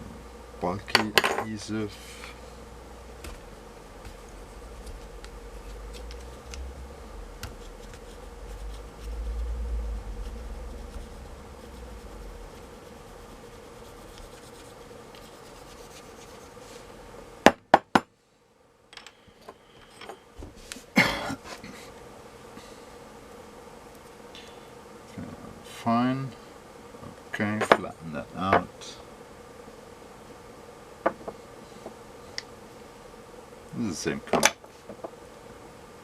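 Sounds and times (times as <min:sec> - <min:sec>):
rubbing and scraping: 0:03.2 - 0:16.9.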